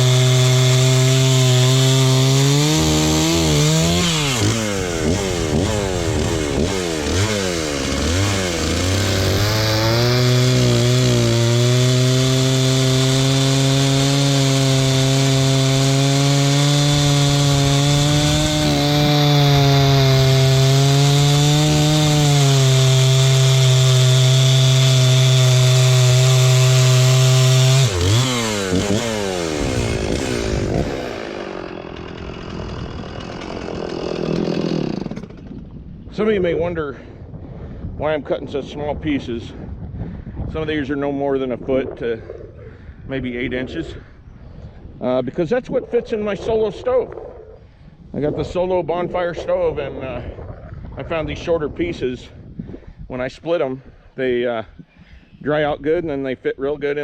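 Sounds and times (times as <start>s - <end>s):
chainsaw cutting through wood: 0.0s - 37.1s.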